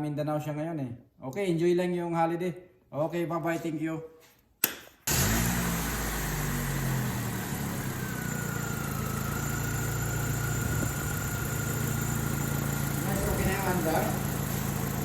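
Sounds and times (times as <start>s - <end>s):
sharp click: 4.6s - 5.0s
car engine starting and idling: 5.0s - 15.0s.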